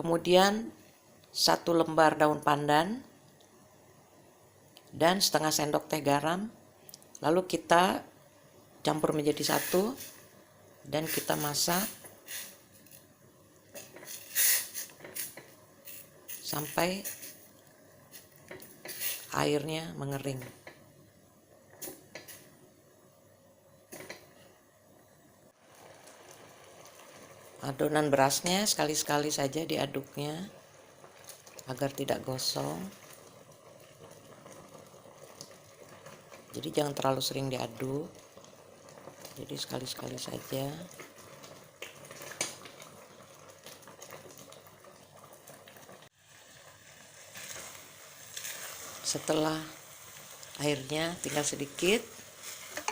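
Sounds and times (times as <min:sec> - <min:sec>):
low steady hiss of cooking: 0:00.0 - 0:52.9
rice bubbling in a pot: 0:00.1 - 0:52.9
utensil scraping a pot: 0:13.8 - 0:17.4, 0:18.2 - 0:19.3.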